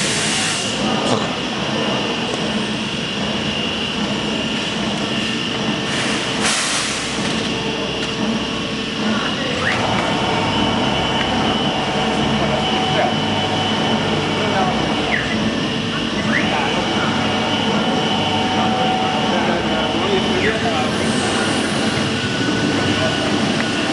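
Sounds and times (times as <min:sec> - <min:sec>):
plasma cutter hissing: 0:00.0 - 0:00.8, 0:05.8 - 0:07.2
constant high whine: 0:00.0 - 0:23.9.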